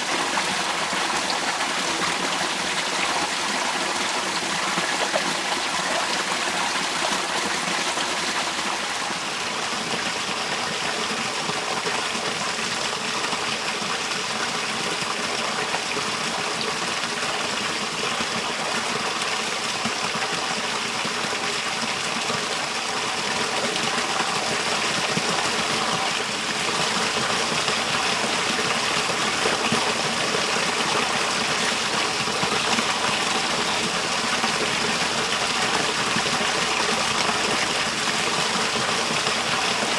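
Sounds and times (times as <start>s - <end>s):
water rushing: 0.0s - 11.6s, 20.5s - 39.9s.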